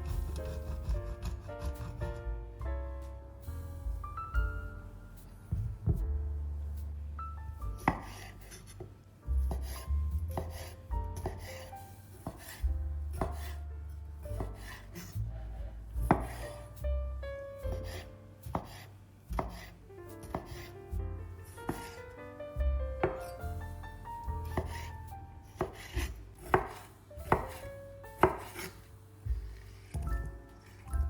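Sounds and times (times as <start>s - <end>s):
knife chopping on cutting board: 0.1s - 2.0s, 7.8s - 8.3s, 9.5s - 11.6s, 12.2s - 13.6s, 14.4s - 15.1s, 16.1s - 16.6s, 17.6s - 20.7s, 21.7s - 22.0s, 24.4s - 24.9s, 25.5s - 30.3s.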